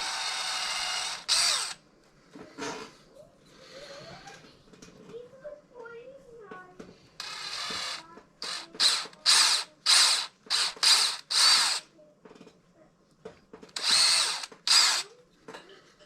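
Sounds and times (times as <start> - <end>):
power drill bursts: 0.0 - 1.8, 7.2 - 11.9, 13.8 - 15.1.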